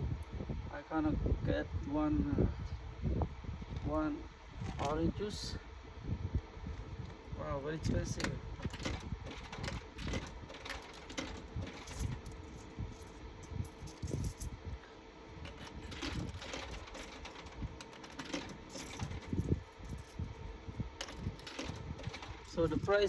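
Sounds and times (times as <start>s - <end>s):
faint steady hum: 0.0s - 23.0s
coins clinking into vending machine: 8.1s - 14.5s, 15.4s - 20.4s, 21.0s - 23.0s.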